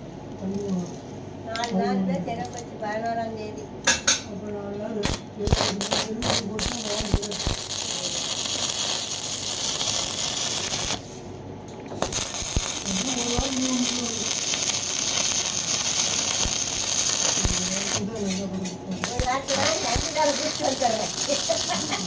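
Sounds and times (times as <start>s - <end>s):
arc welding crackling hiss: 5.0s - 11.3s, 11.9s - 22.0s.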